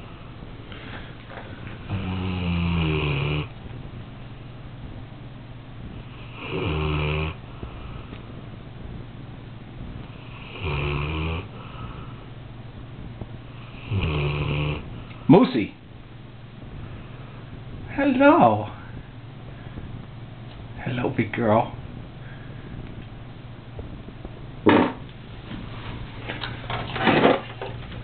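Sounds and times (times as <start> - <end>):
dog snoring loudly: 0.8 - 3.6, 5.9 - 8.1, 10.0 - 12.2, 13.6 - 15.4.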